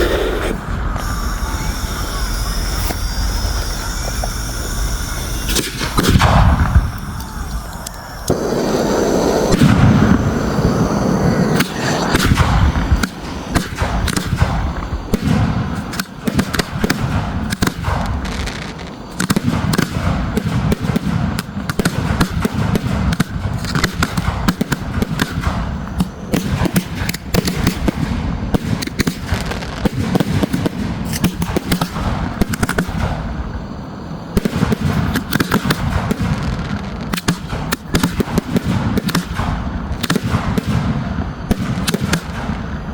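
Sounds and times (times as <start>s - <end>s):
deep fireworks booms: 0.0s - 42.9s
fireworks crackling and popping: 0.0s - 42.9s.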